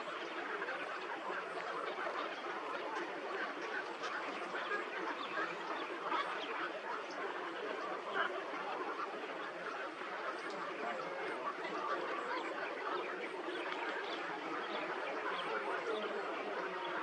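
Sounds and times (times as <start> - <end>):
waterbirds quacking and honking: 0.0 - 17.0.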